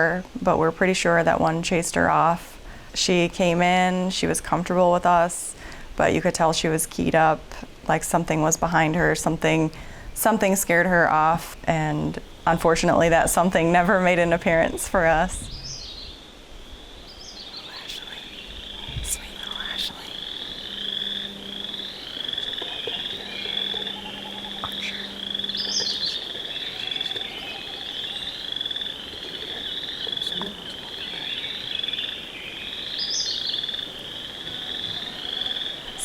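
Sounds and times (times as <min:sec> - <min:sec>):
frogs trilling: 0:09.8 - 0:36.0.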